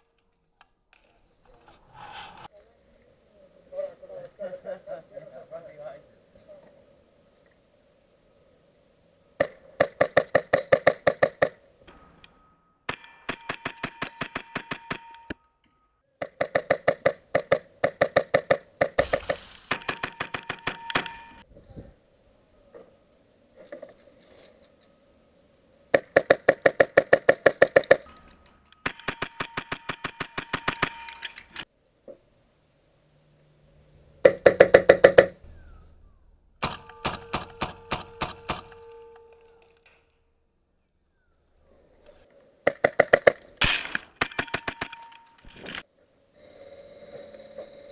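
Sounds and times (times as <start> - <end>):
airsoft guns firing on full auto: 9.4 - 11.6, 12.9 - 15.3, 16.2 - 21.4, 25.9 - 28.1, 28.8 - 31.3, 34.2 - 35.4, 36.6 - 38.8, 42.7 - 45.4.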